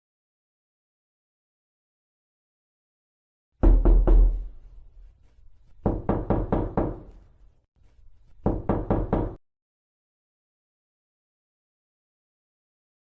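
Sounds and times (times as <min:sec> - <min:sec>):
knocking on a door: 0:03.6 - 0:04.6, 0:05.8 - 0:07.1, 0:08.4 - 0:09.4.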